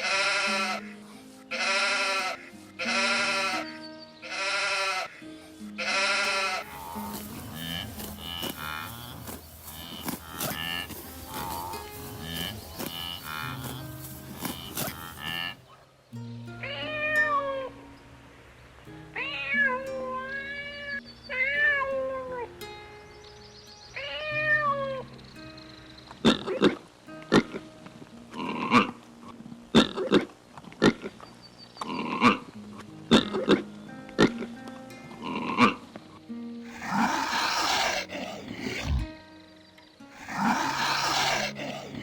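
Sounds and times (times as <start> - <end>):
background music: 0.0 - 15.6, 31.9 - 42.0
short high animal calls: 0.0 - 15.6, 36.7 - 39.2, 40.1 - 42.0
cat meowing: 16.6 - 17.7, 19.2 - 22.5, 24.0 - 25.0.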